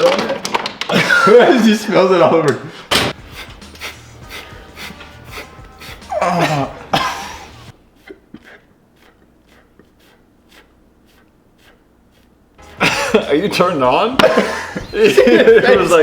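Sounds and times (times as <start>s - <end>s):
person making rasping mouth noises: 7.9s - 12.4s.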